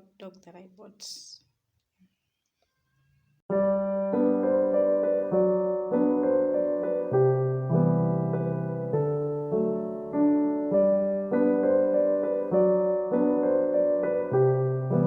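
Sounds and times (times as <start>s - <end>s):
solo piano chords: 3.5s - 15.0s.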